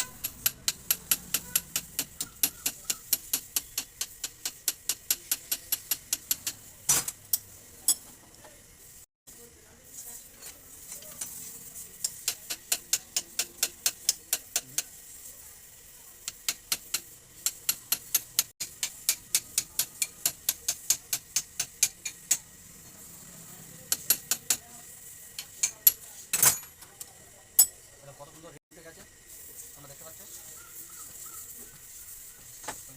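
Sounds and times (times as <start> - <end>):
metal tool tapping on steel: 0.0 - 8.1, 12.0 - 14.9, 16.2 - 22.5, 23.9 - 24.7, 25.3 - 27.8.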